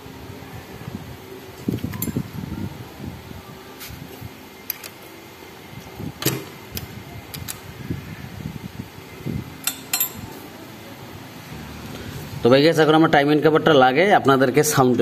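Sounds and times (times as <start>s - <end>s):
metal tools clicking: 9.6s - 10.3s.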